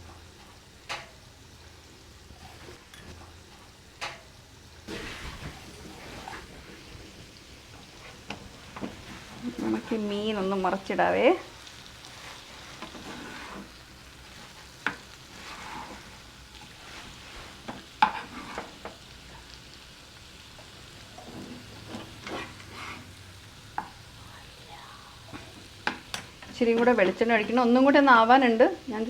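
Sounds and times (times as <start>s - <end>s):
fish sizzling in oil: 0.0s - 29.0s
spatula knocking on pan: 25.3s - 27.7s.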